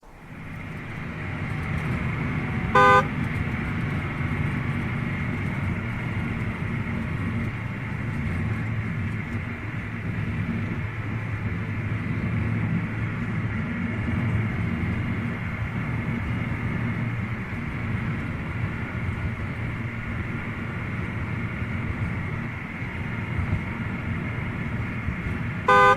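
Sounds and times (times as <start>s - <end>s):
car engine running: 0.0s - 25.9s
car horn honk: 1.5s - 3.7s, 25.7s - 25.9s.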